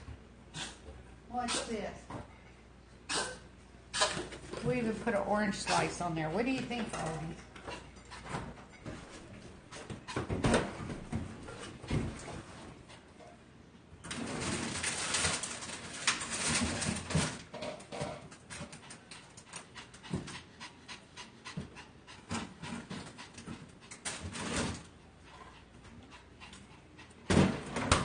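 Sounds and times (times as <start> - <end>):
small dog panting: 18.6 - 24.3, 24.9 - 27.3.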